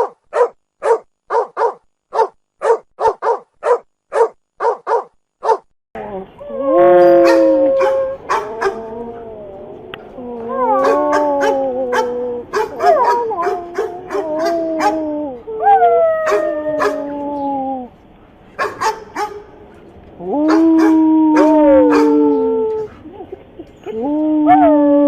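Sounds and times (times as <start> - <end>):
dog yipping: 0.0 - 5.6, 7.0 - 8.8, 10.7 - 15.0, 16.2 - 17.0, 18.6 - 19.5, 20.5 - 22.2
dog howling: 6.4 - 17.9, 20.2 - 25.0.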